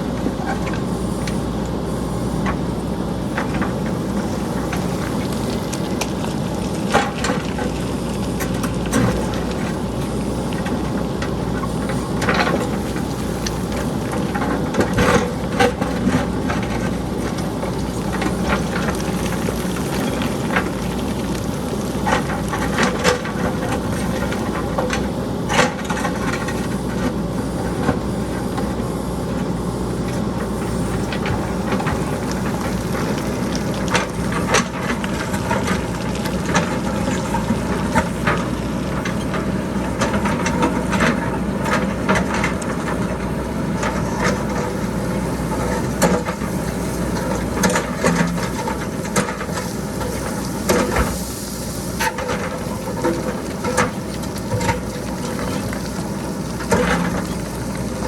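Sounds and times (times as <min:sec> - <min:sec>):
diesel engine running: 0:00.0 - 0:58.0
rocks clattering down hillside: 0:10.5 - 0:27.0, 0:30.3 - 0:58.0.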